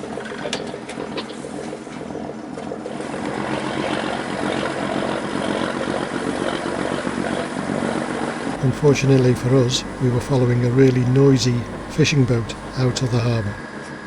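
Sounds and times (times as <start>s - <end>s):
boat engine running: 8.6s - 13.6s.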